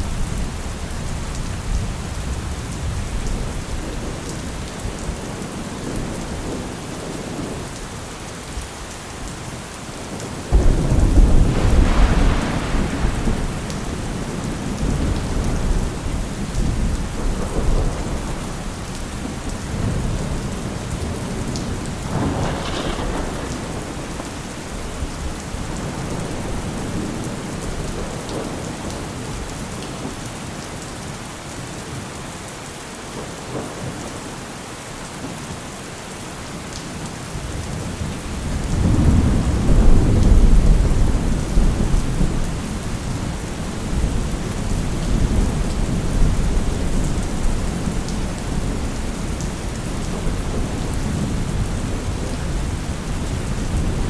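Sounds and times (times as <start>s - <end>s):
steady rain: 0.0s - 54.0s
rolling thunder: 10.2s - 29.5s, 37.4s - 54.0s.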